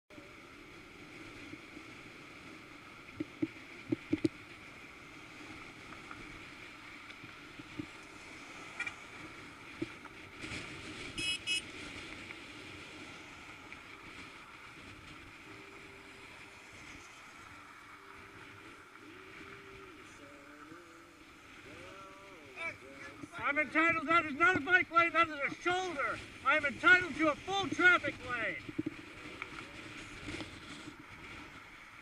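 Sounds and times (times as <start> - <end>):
rushing road noise: 0.1 - 32.0
vehicle horn honking: 11.2 - 11.7.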